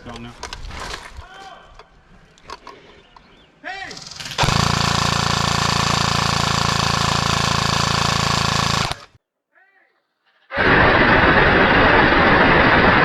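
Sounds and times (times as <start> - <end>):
airsoft gun full-auto burst: 4.0 - 9.2, 10.6 - 13.0.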